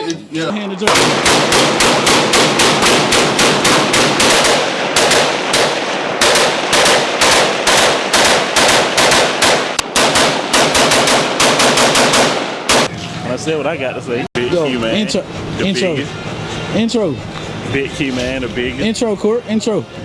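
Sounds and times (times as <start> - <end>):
rapid gunshots: 0.9 - 12.9.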